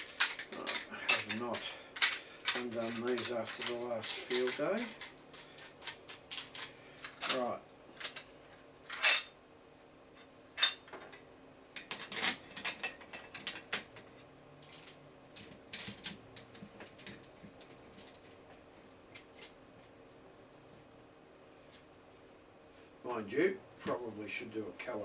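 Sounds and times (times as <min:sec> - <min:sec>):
metal hardware clicking and rattling: 0:00.0 - 0:08.3, 0:11.8 - 0:20.0.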